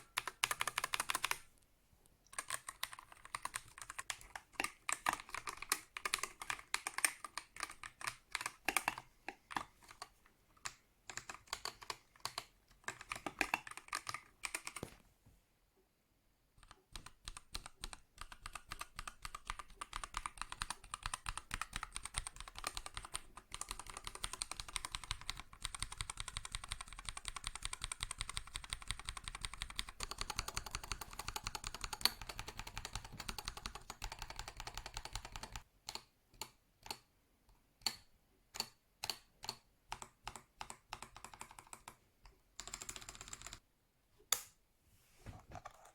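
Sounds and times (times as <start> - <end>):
mechanical keyboard typing: 0.0 - 1.5, 2.3 - 14.9, 16.6 - 37.0, 38.6 - 42.0, 42.6 - 43.6.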